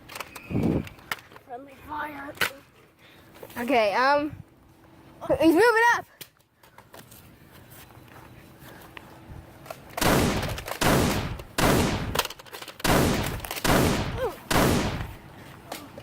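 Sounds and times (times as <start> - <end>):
loud gunshots: 10.0 - 15.2.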